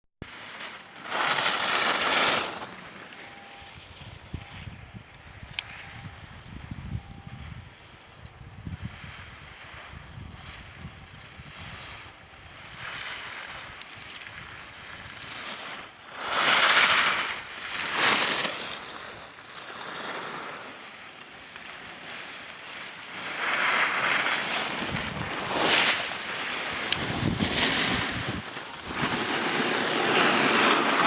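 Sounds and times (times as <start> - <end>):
skis scraping snow: 0.2 - 4.0, 7.8 - 31.0
wind noise on microphone: 3.2 - 19.4, 23.1 - 31.0.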